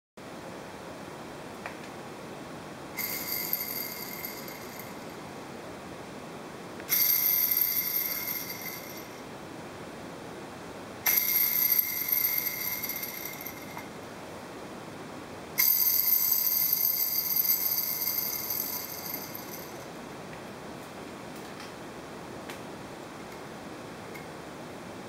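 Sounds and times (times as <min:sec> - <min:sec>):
metallic ringing of crankshaft: 0:03.0 - 0:05.2, 0:06.9 - 0:09.2, 0:11.0 - 0:13.9, 0:15.6 - 0:19.9.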